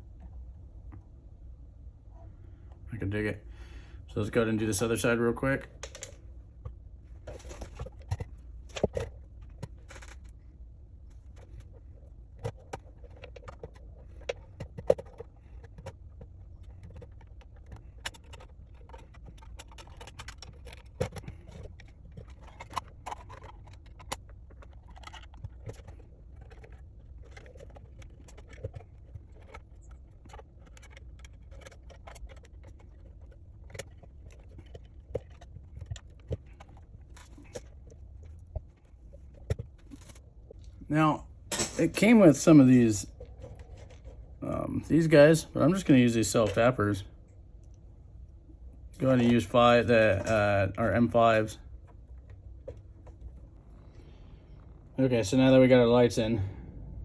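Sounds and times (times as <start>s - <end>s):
low steady hum: 0.0s - 57.0s
plastic parts clicking and scraping: 5.8s - 40.8s, 41.6s - 47.7s.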